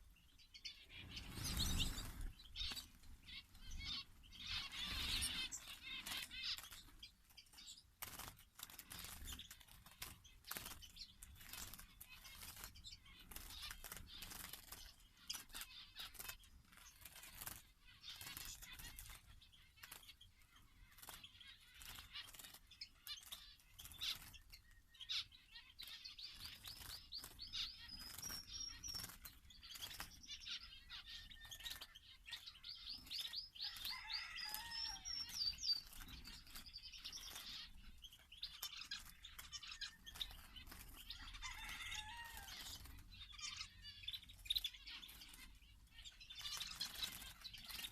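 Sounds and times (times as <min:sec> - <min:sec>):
fast trilling birdsong: 0:00.0 - 0:47.9
songbirds chirping: 0:00.0 - 0:47.9
wing flutters: 0:08.0 - 0:20.2, 0:20.8 - 0:24.4, 0:25.8 - 0:37.8, 0:46.3 - 0:47.9.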